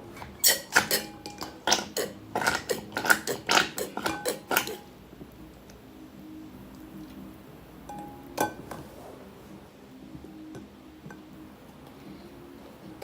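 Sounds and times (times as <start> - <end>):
utensil clinking against bowl: 0.4 - 4.9.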